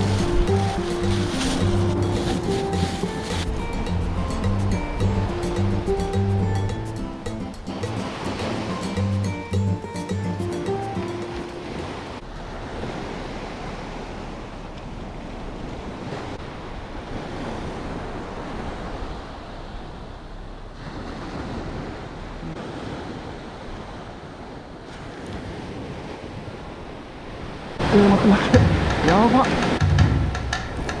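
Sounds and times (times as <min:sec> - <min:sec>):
wind buffeting microphone: 0:00.0 - 0:09.9
waves washing onto beach: 0:00.0 - 0:29.9.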